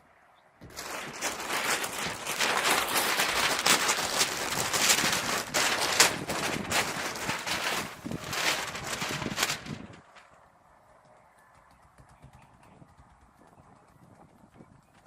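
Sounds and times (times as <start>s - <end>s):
roofing membrane crackling unrolled: 0.6s - 10.6s.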